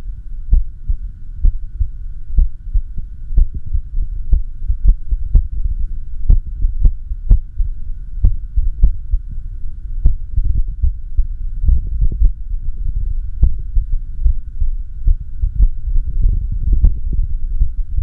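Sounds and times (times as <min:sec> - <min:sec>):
heartbeat thumps: 0:00.0 - 0:09.4, 0:10.0 - 0:18.0
steady hum: 0:00.0 - 0:18.0.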